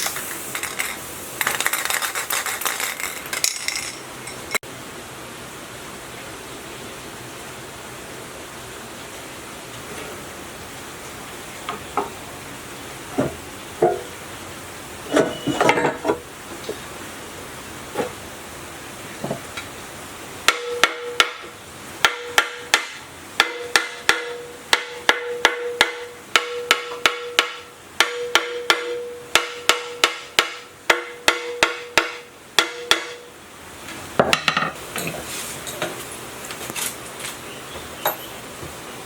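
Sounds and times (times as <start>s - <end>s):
hammer striking metal: 20.5s - 33.3s.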